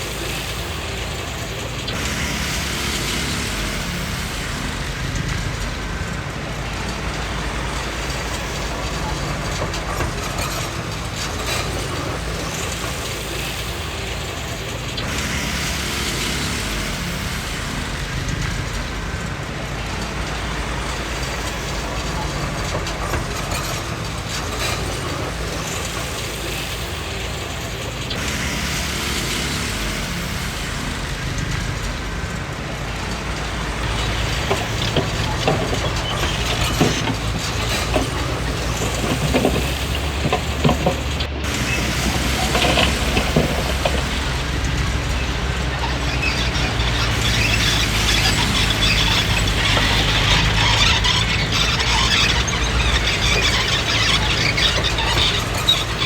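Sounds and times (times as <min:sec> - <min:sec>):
bulldozer diesel engine running: 0:00.0 - 0:56.0
clanking steel tracks: 0:00.0 - 0:56.0.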